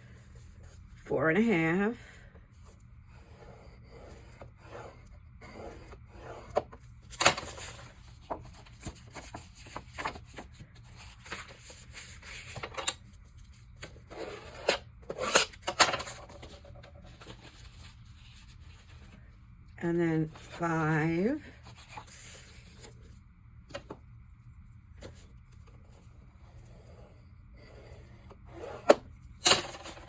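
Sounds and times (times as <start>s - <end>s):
tool scraping cardstock: 3.1s - 6.8s.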